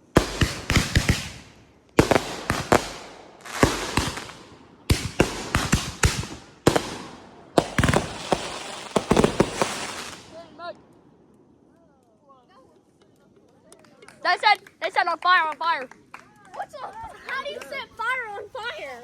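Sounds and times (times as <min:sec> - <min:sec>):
fireworks bangs: 0:00.0 - 0:10.6
fireworks crackle: 0:00.0 - 0:13.2.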